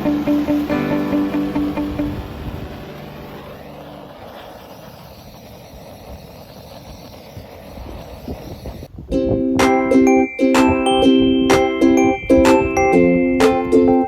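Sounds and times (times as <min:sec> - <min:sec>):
acoustic guitar music: 0:00.0 - 0:03.6, 0:09.1 - 0:14.0
chiming bell-like music: 0:09.6 - 0:14.0.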